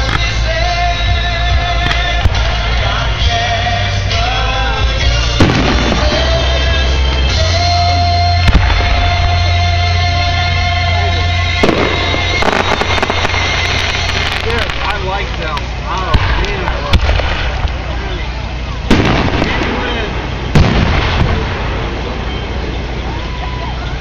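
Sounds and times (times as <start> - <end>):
crackling firework bursts: 0.0 - 4.2, 5.0 - 24.0
fireworks bangs: 0.0 - 4.2, 5.0 - 24.0
music with long sung notes: 0.0 - 15.9.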